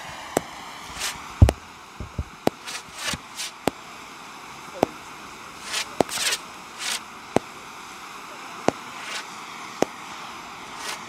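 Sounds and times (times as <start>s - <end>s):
fireworks bangs: 0.0s - 3.9s, 4.8s - 7.7s, 8.5s - 11.0s
fireworks hissing bursts: 0.0s - 11.0s
faint sliding whistle: 9.0s - 9.3s.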